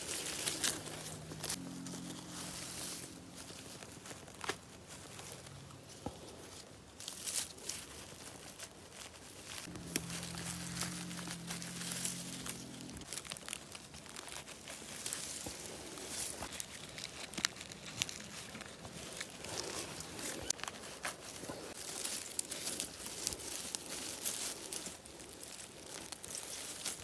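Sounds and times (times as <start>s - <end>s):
rustling and crinkling: 0.0s - 27.0s
low steady hum: 9.6s - 22.7s.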